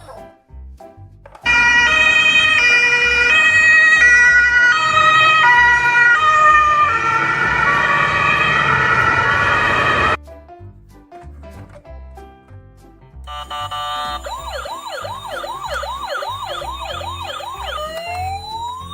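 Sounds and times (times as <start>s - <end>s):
two-tone ambulance siren: 1.5s - 10.2s, 13.3s - 18.9s.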